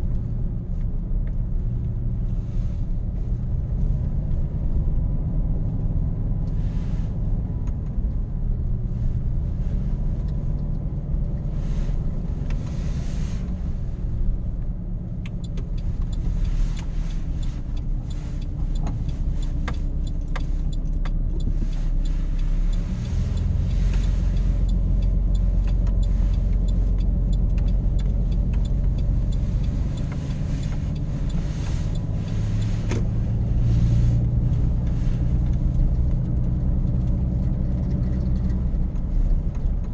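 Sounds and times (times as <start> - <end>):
truck engine rumbling: 0.0 - 39.9
faint clicks and crackles: 14.6 - 39.9.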